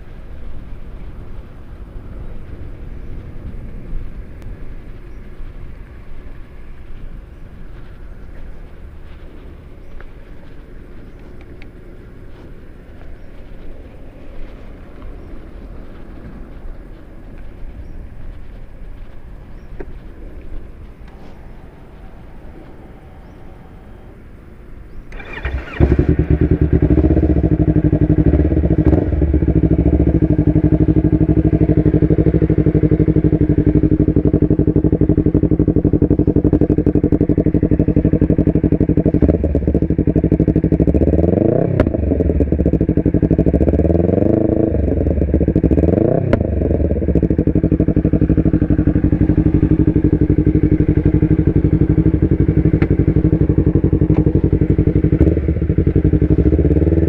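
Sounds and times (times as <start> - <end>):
motorcycle engine idling: 0.0 - 57.0
engine throttle blips: 1.0 - 57.0
engine starter cranking: 25.1 - 26.4.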